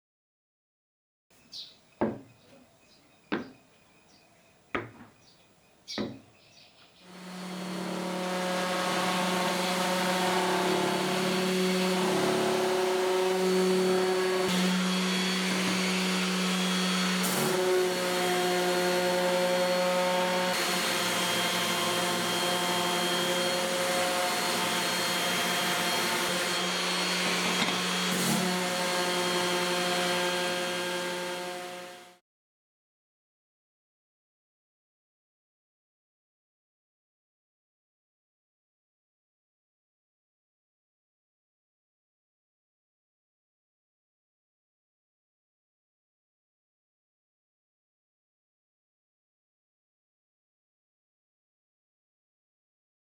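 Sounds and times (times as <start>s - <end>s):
light knocks: 2.0s - 2.6s, 3.3s - 3.6s, 4.8s - 5.2s, 5.9s - 6.2s
small electric motor humming: 7.1s - 32.2s.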